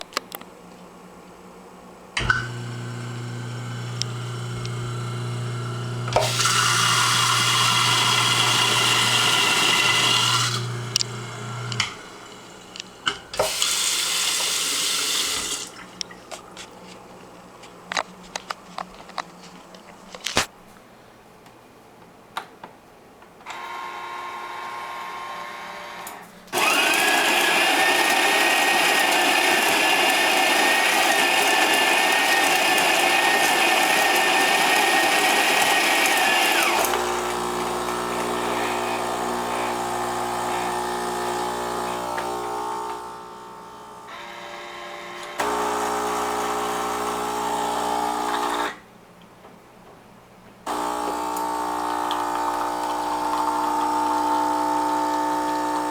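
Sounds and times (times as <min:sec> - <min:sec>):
low electric hum: 0:00.4 - 0:06.6
electric motor whining and grinding: 0:02.2 - 0:13.5, 0:23.5 - 0:48.8, 0:50.7 - 0:55.9.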